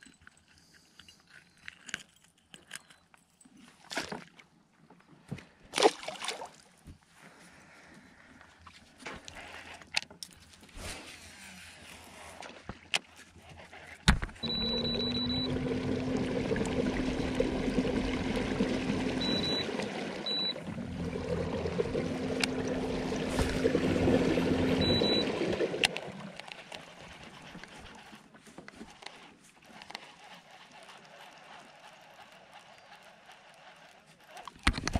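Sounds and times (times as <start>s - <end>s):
small boat motor humming: 14.2s - 28.3s, 28.9s - 34.9s
water churning: 14.4s - 28.3s.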